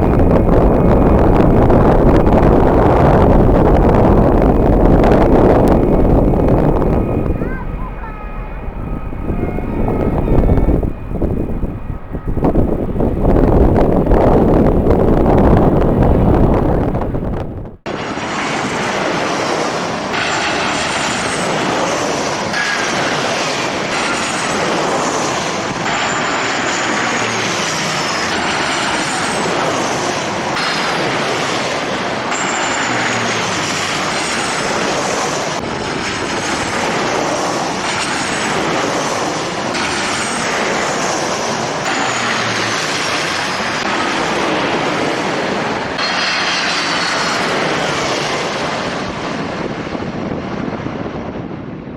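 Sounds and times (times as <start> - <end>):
jet engine noise: 0.0 - 51.9
turbine whines falling in pitch: 0.0 - 51.9.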